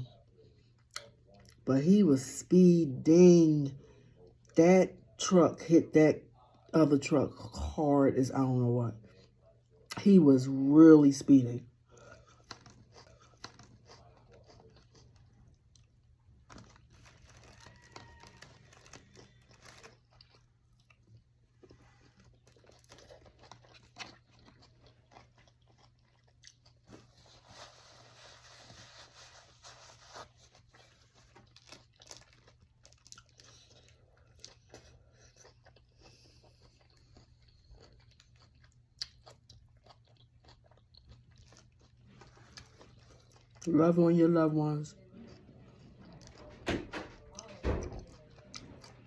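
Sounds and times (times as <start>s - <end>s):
food being chewed and crunched: 11.3s - 44.0s, 45.0s - 49.0s
small clicks and crackles: 16.4s - 20.0s.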